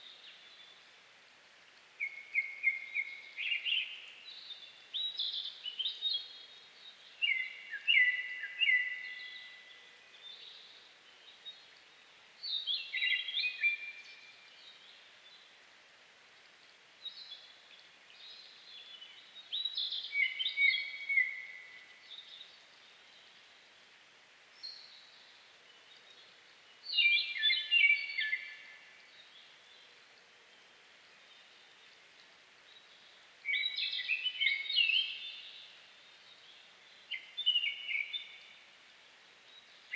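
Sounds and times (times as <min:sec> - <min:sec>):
songbird whistling: 0:07.2 - 0:09.4, 0:19.6 - 0:21.6.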